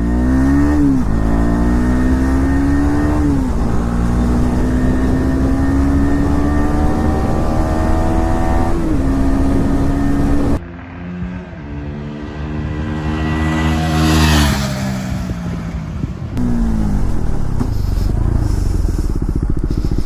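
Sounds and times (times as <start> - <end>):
motorcycle engine accelerating: 0.0 - 20.0.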